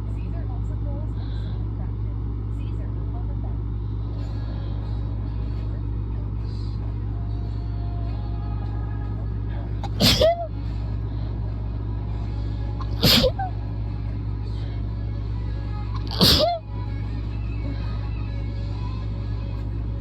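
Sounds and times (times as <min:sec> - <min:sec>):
person sneezing: 0:09.8 - 0:10.5, 0:12.9 - 0:13.5, 0:16.0 - 0:16.6.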